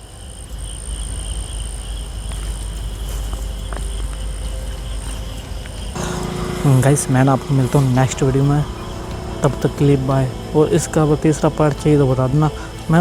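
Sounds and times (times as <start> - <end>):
insects high-pitched trill: 0.0 - 13.0
insects lower pulsing trill: 0.0 - 13.0
low microphone rumble: 6.0 - 12.3.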